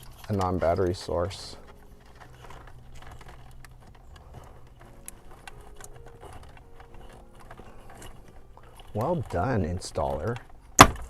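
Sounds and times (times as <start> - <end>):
clicks and rustling of wires: 0.0 - 11.0.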